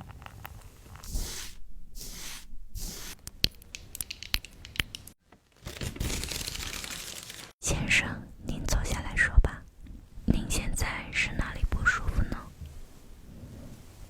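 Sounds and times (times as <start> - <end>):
tearing or rubbing strokes: 0.9 - 3.2
sharp clicks and taps: 3.2 - 5.2.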